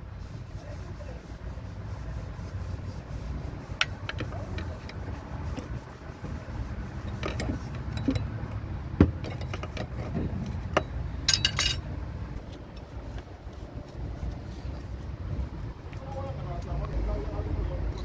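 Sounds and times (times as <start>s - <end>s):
steady low rumble: 0.0s - 18.0s
metal tools clinking and tapping: 7.2s - 8.3s, 9.2s - 11.9s.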